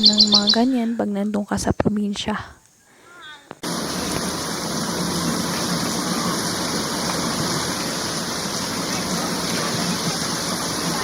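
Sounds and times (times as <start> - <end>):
rush of flowing water: 3.6 - 11.0.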